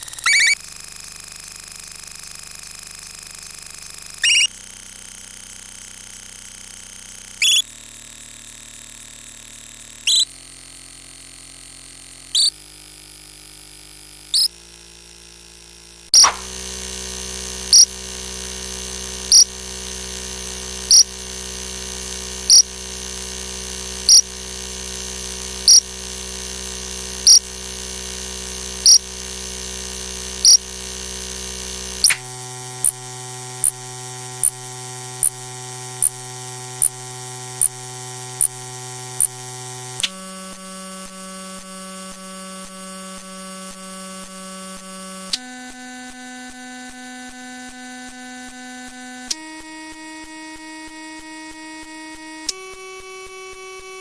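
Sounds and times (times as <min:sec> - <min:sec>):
synthesized tone drone: 0:00.0 - 0:00.6, 0:04.2 - 0:04.5, 0:07.4 - 0:07.6, 0:10.1 - 0:10.3, 0:19.0 - 0:19.9, 0:25.6 - 0:26.0, 0:27.2 - 0:40.1
short high beep: 0:00.2 - 0:00.6, 0:04.2 - 0:04.5, 0:07.4 - 0:07.6, 0:10.1 - 0:10.3.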